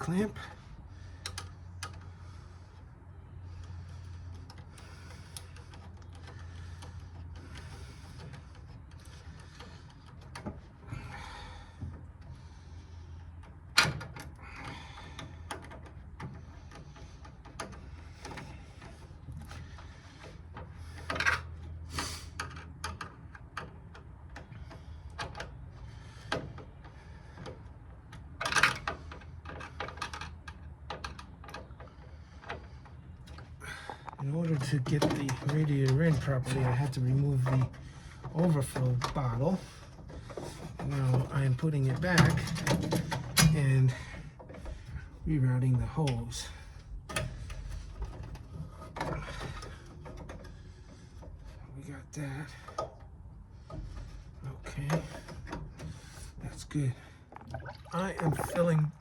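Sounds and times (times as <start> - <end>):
rustling and scraping of tools: 0.0 - 59.0
steady low hum: 0.0 - 59.0.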